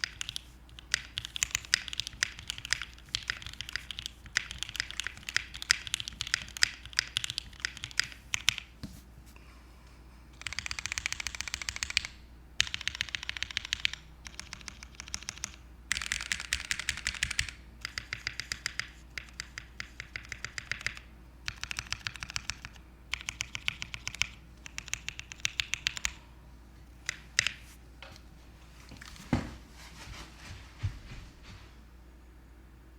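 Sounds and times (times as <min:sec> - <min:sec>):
mechanical keyboard typing: 0:00.0 - 0:08.7, 0:10.4 - 0:26.2, 0:27.0 - 0:27.6.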